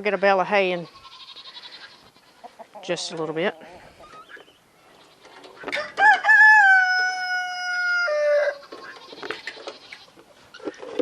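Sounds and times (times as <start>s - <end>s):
rooster crowing: 5.7s - 8.6s.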